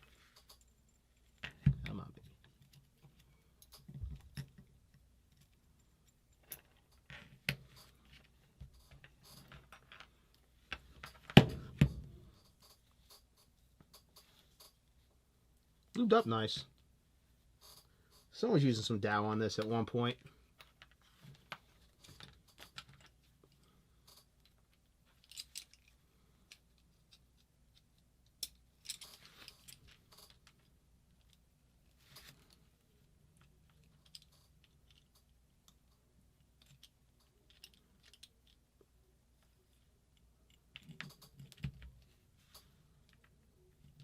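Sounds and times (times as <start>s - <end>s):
small metal parts clicking: 5.3s - 8.1s, 22.0s - 31.4s, 33.4s - 38.6s
rattly handling noises: 20.6s - 27.3s, 28.4s - 31.4s.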